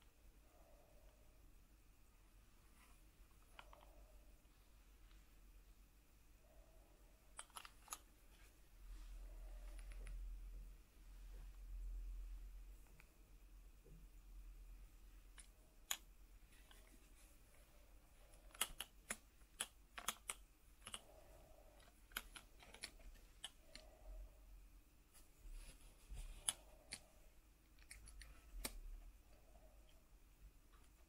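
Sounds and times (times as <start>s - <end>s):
soft rustles: 16.4s - 18.4s, 25.0s - 27.1s
plastic figures clicking and tapping: 18.4s - 21.1s, 21.8s - 23.9s.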